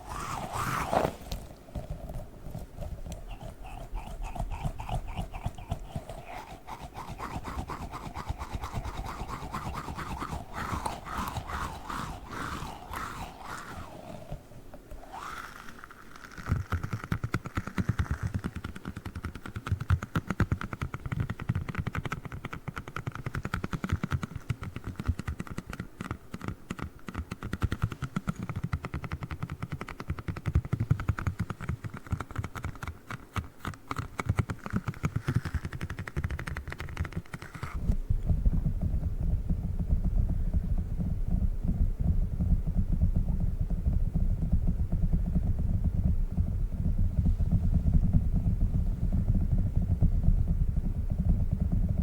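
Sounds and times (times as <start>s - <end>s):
squishy toy crackling: 0.0s - 22.2s, 30.2s - 37.8s.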